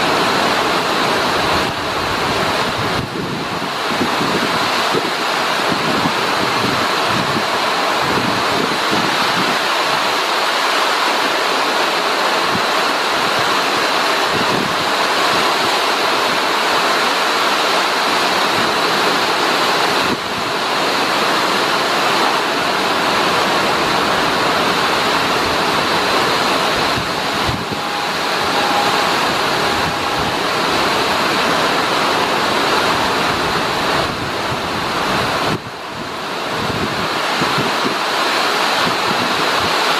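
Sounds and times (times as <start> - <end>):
wind buffeting microphone: 0.0 - 10.0, 14.2 - 15.7, 18.3 - 38.1
heavy rain pouring: 0.0 - 39.9.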